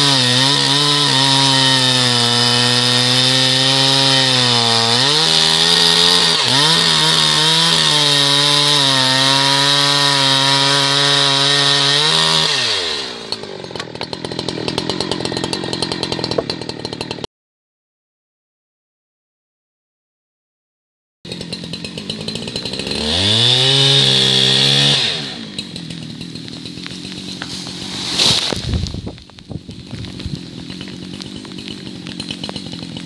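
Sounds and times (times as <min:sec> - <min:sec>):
chainsaw cutting wood: 0:00.0 - 0:17.3, 0:21.3 - 0:33.0.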